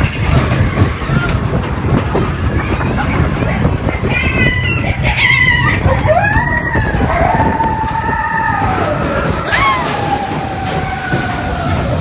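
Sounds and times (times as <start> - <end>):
roller coaster rumbling on track: 0.0 - 12.0
riders screaming: 4.1 - 12.0.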